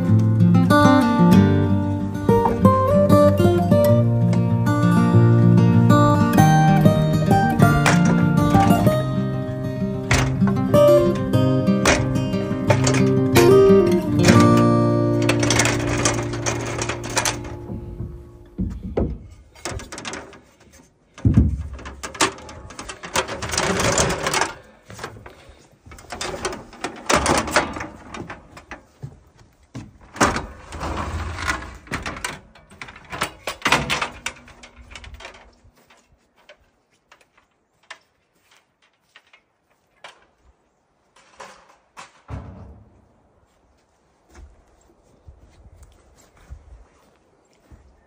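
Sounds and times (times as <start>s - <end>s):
knocks scrapes and clatter: 5.8s - 40.4s.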